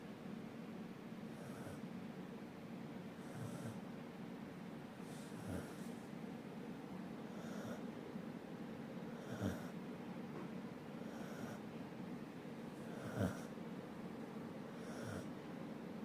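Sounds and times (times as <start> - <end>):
dog snoring: 1.3 - 1.8, 3.2 - 3.8, 5.0 - 6.0, 7.2 - 7.9, 9.1 - 9.8, 11.0 - 11.6, 12.8 - 13.6, 14.7 - 15.3.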